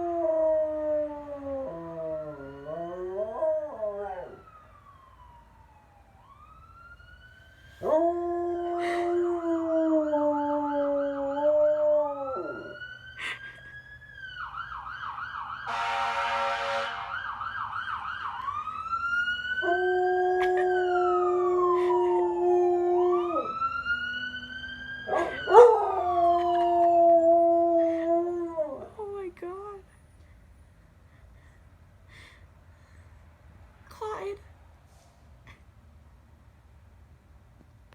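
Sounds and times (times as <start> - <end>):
emergency vehicle siren: 0.0 - 29.0
dog howling: 25.1 - 27.1.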